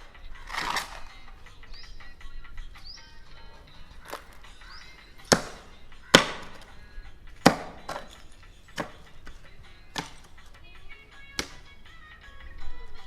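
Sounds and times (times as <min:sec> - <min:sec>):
hand tool chopping debris: 0:03.6 - 0:10.6, 0:11.4 - 0:11.7.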